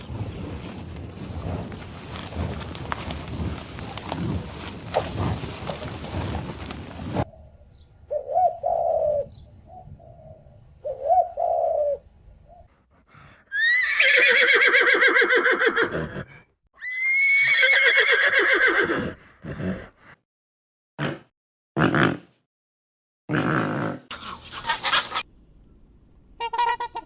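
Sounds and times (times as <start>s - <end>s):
dove cooing: 8.1s - 12.7s
horse whinnying: 13.5s - 19.2s.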